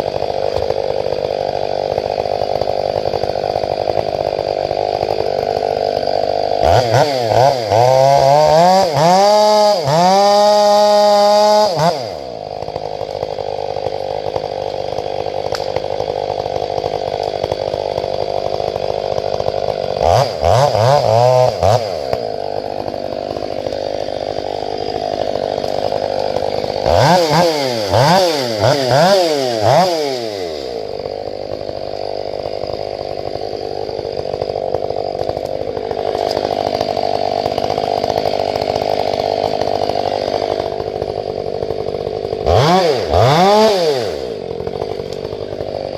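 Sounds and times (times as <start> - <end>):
chainsaw idling and revving: 0.0 - 45.9.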